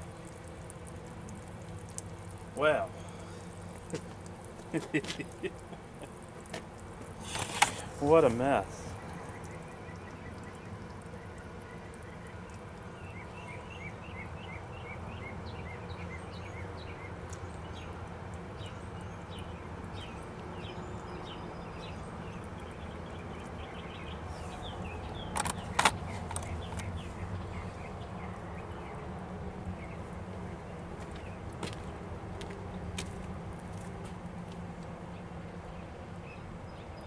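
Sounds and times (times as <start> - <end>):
steady low hum: 0.0 - 21.0
birds chirping: 0.0 - 33.3.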